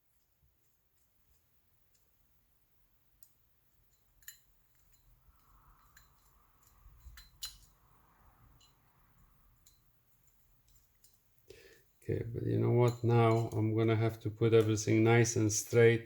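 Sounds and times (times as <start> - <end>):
small metallic screw clicks: 3.2 - 7.9.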